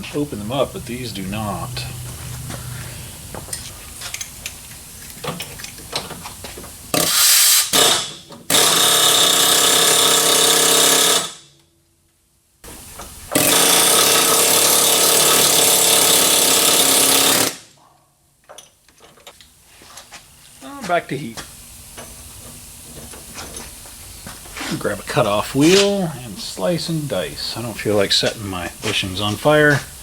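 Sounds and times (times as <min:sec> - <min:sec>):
handheld power tool running: 0:06.9 - 0:11.4, 0:13.3 - 0:17.6.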